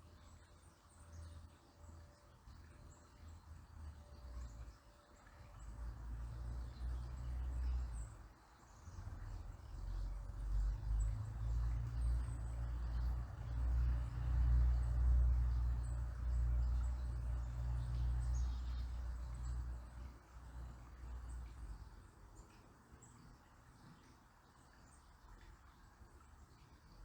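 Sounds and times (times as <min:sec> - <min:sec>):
river flowing gently: 0:00.0 - 0:27.0.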